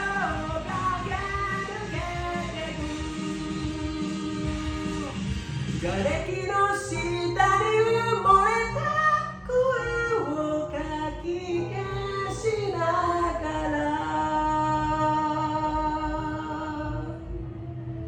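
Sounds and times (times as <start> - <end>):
backing track music: 0.0 - 18.0
person singing karaoke: 0.0 - 18.0.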